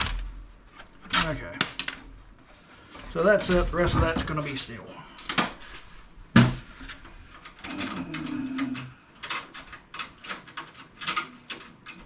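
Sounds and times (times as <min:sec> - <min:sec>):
metal and plastic pieces rattling: 0:00.0 - 0:02.2, 0:06.7 - 0:12.0.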